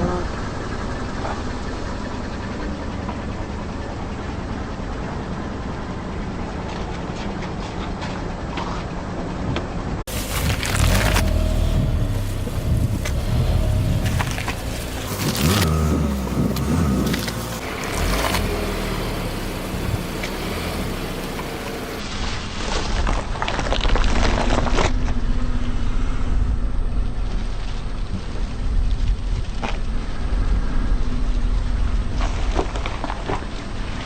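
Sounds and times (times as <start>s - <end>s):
car engine running low: 0.0s - 34.0s
tyre crushing crackles: 10.1s - 25.2s.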